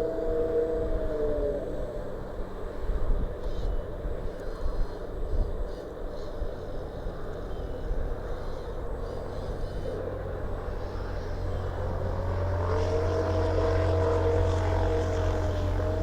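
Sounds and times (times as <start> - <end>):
rising motor whine: 10.4 - 16.0.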